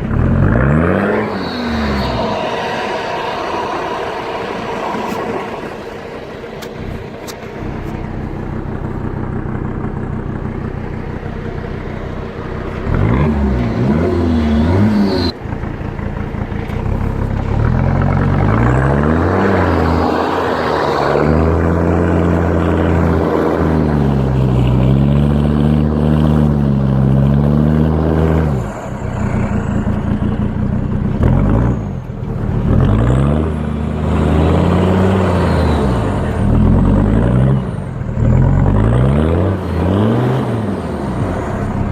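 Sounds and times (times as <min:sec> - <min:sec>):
car engine revving: 0:00.0 - 0:41.9.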